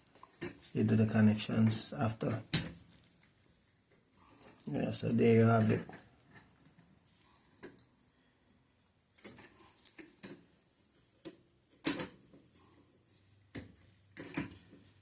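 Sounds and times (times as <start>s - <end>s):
plumbing tools clicking and knocking: 13.5s - 14.7s.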